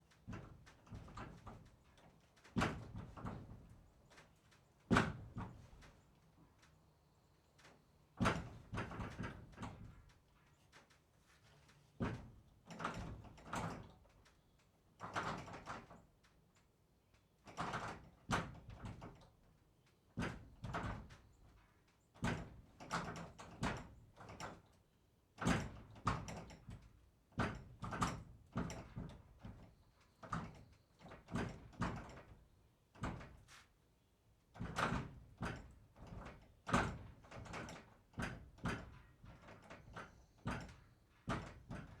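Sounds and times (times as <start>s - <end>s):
barn door knocking and rattling: 0.2s - 1.7s, 2.5s - 3.7s, 25.4s - 29.7s, 30.3s - 33.5s, 34.5s - 42.0s.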